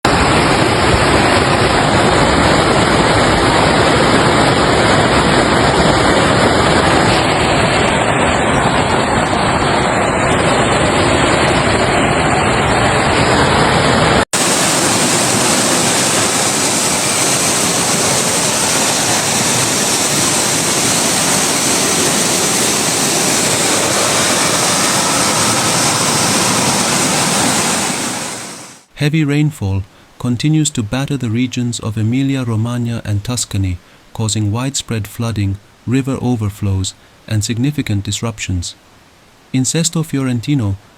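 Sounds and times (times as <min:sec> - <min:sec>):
floodwater rushing: 0:00.1 - 0:28.9.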